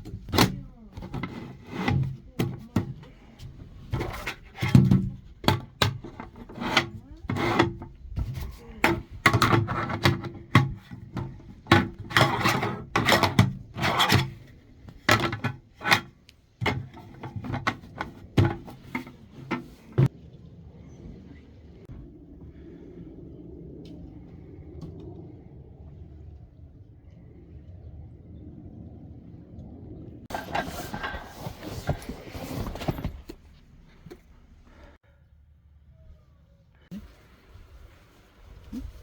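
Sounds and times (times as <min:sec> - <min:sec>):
objects knocking and clattering: 0:00.0 - 0:20.1
scraping and rubbing: 0:00.0 - 0:20.1, 0:30.3 - 0:34.9.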